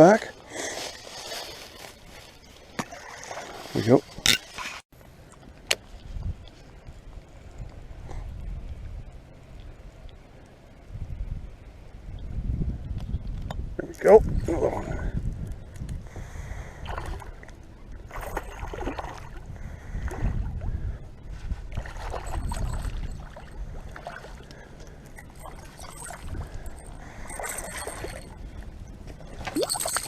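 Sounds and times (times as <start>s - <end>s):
water splashing and sloshing: 0.6s - 4.9s, 16.6s - 30.0s.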